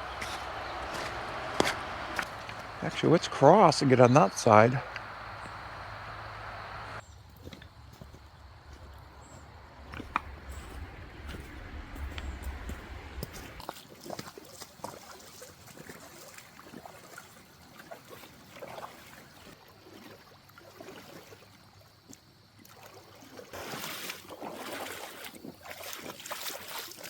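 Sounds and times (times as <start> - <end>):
small water splashes: 0.0 - 27.0
water sloshing around legs: 8.6 - 27.0.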